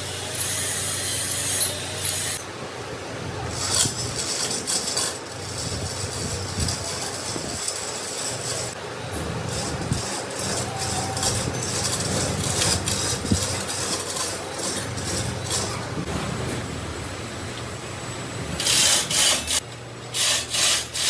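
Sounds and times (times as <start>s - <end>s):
machine tool running: 3.5s - 16.1s
scraping and clinking strokes: 3.6s - 8.8s, 9.5s - 15.9s.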